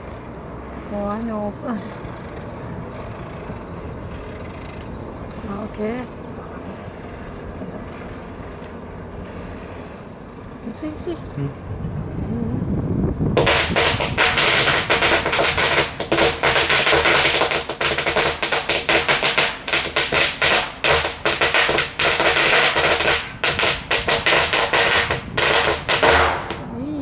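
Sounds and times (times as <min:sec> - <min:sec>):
firecrackers crackling and banging: 0:13.3 - 0:26.7.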